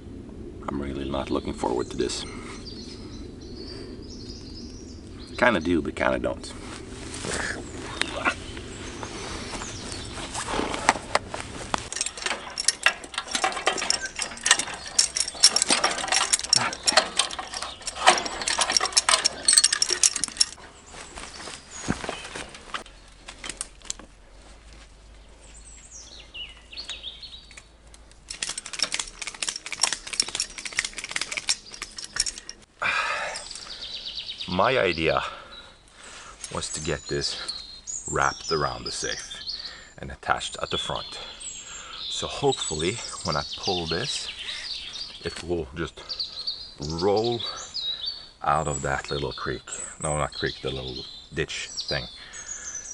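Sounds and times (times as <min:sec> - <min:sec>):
rapid clicking and metallic rattling: 0:11.8 - 0:20.6, 0:27.9 - 0:32.7.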